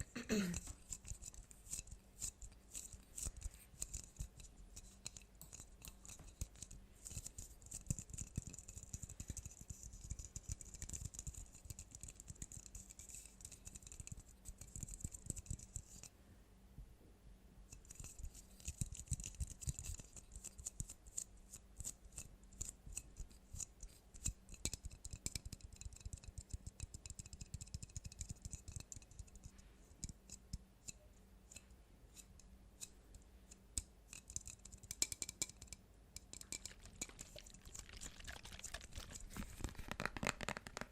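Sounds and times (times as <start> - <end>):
fingers tapping and clicking: 5.1 - 16.0, 24.2 - 29.4, 33.8 - 40.9.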